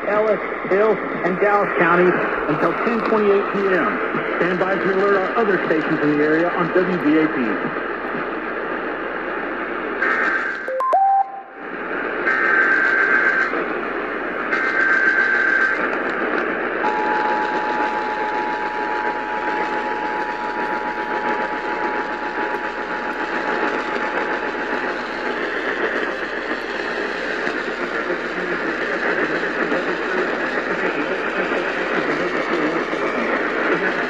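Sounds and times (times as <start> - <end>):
radio static hiss: 0.0 - 34.0
data tone bursts: 10.7 - 11.6, 16.8 - 23.6
two-tone attention signal: 10.7 - 11.6.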